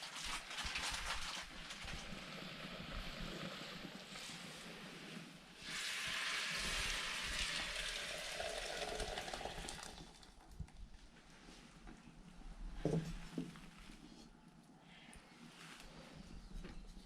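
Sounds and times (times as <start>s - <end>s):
food sizzling in a pan: 5.6s - 9.4s.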